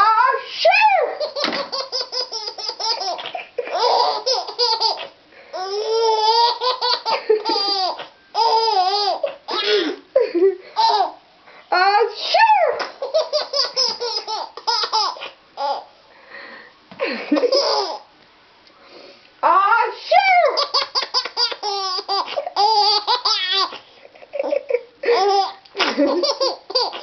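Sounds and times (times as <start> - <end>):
baby laughing: 1.0 - 11.2, 13.0 - 15.9, 17.0 - 18.1, 20.4 - 27.0.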